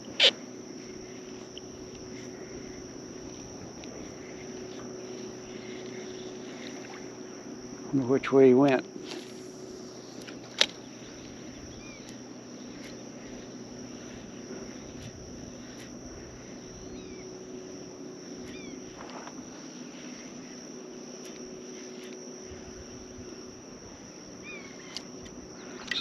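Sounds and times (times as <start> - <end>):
insect buzz: 0.0 - 26.0
wind: 0.0 - 26.0
bird chirps: 25.6 - 26.0.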